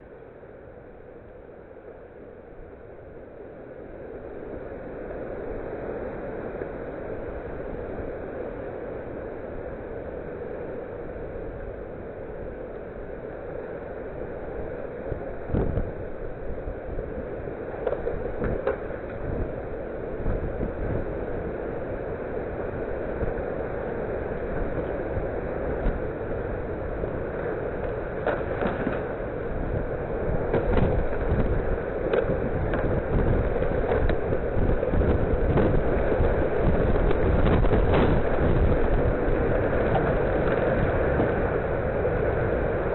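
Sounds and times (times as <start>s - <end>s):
wind blowing on microphone: 14.0s - 42.9s.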